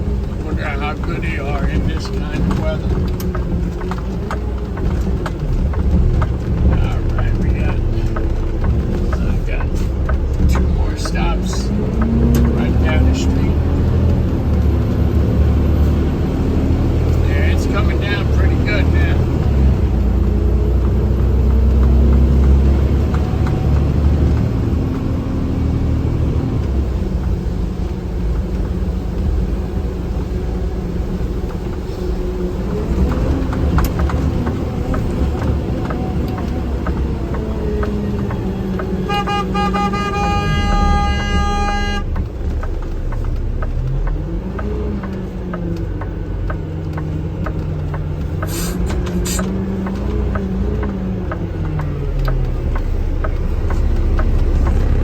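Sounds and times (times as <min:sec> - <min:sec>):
truck engine running: 0:00.0 - 0:55.0
vehicle horn: 0:39.0 - 0:42.2.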